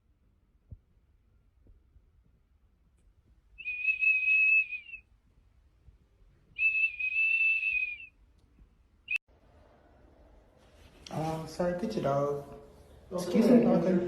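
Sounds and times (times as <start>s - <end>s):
steady high whistle: 3.6s - 5.1s, 6.5s - 8.2s.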